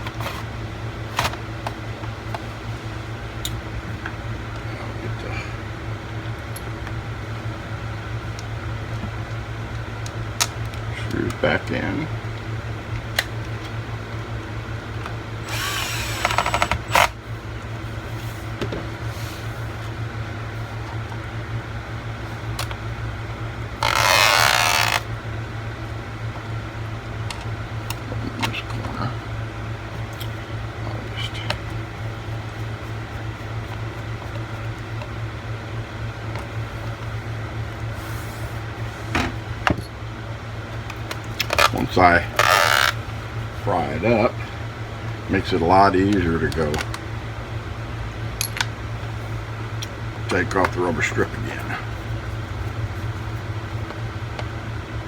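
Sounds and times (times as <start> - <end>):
steady low hum: 0.0 - 55.0
electric screwdriver whirring: 15.4 - 17.2, 23.8 - 25.1.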